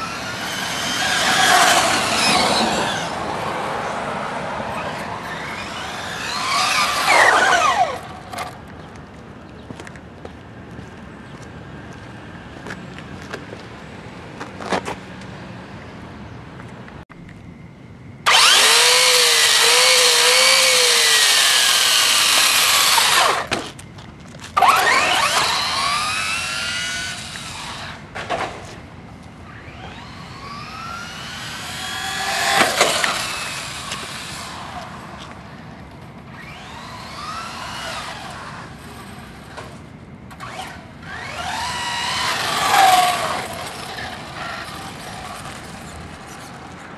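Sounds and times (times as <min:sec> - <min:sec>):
rc truck electric motor whining: 0:00.0 - 0:03.6, 0:04.7 - 0:08.5, 0:18.2 - 0:23.8, 0:24.6 - 0:28.1, 0:29.4 - 0:35.7, 0:36.3 - 0:46.7.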